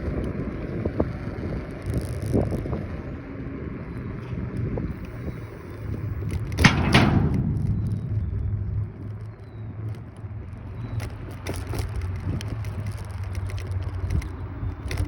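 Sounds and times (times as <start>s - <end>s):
road and wind rumble: 0.0s - 15.0s
short clicks and rattles: 5.0s - 10.0s
sharp knocks: 6.3s - 9.4s.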